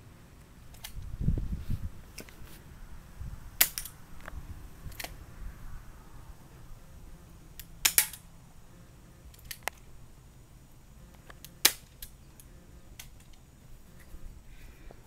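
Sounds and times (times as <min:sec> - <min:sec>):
airsoft gun firing snap: 0:03.6 - 0:04.0, 0:07.6 - 0:08.3, 0:11.3 - 0:12.2.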